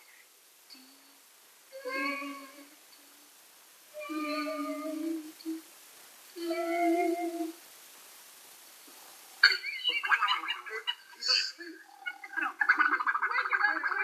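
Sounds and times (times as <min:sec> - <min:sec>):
person humming softly: 0:00.7 - 0:05.7, 0:06.3 - 0:07.7.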